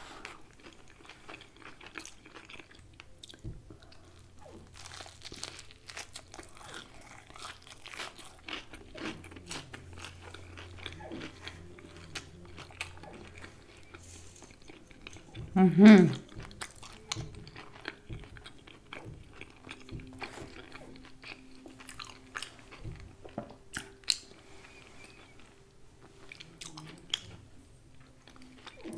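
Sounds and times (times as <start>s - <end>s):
crunchy chewing: 0.0s - 28.9s
low hum: 8.8s - 16.6s.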